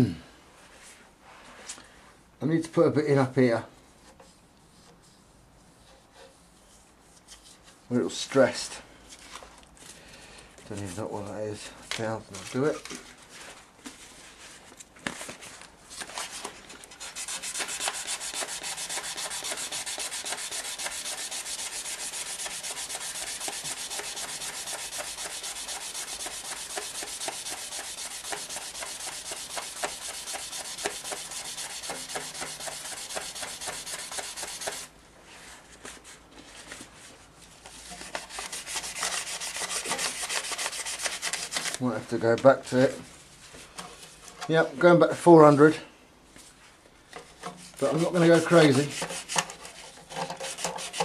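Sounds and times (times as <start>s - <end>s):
sandpaper rubbing on metal: 17.0s - 34.9s, 37.8s - 41.7s, 47.8s - 51.0s.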